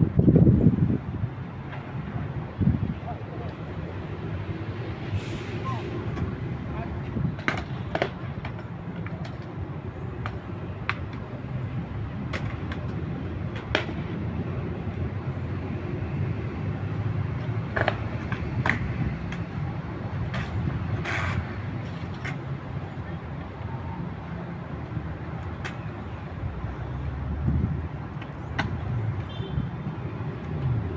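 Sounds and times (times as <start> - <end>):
road traffic rumble: 0.0 - 30.9.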